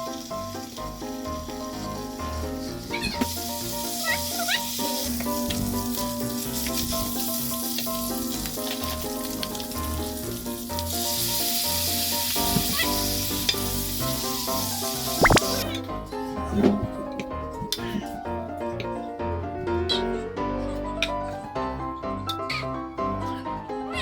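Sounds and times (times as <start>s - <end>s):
pork sizzling in a pan: 0.0s - 16.4s.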